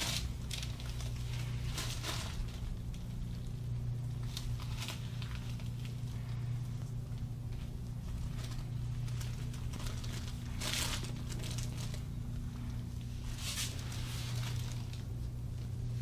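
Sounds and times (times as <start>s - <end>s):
cloth and paper rustling: 0.0s - 16.0s
steady low hum: 0.0s - 16.0s.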